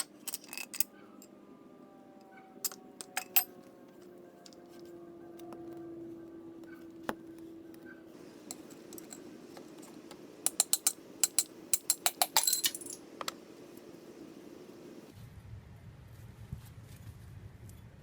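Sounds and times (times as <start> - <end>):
metal tools clinking: 0.0 - 1.3, 2.6 - 3.6, 8.1 - 15.0
steady low hum: 2.6 - 15.1.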